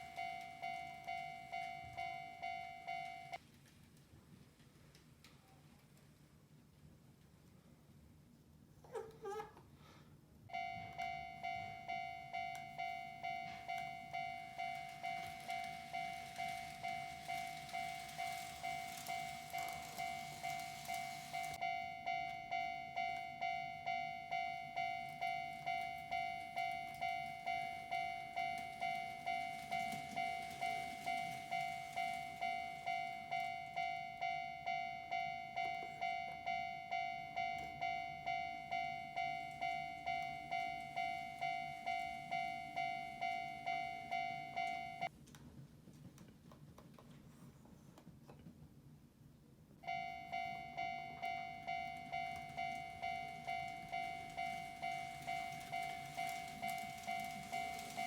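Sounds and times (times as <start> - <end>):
level crossing warning bell: 0.0 - 3.4, 10.5 - 45.1, 49.8 - 58.0.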